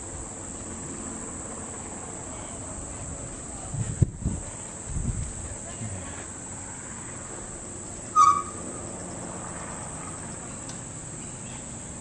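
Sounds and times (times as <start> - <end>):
high-pitched insect drone: 6.4 - 12.0
short bird call: 8.1 - 8.8.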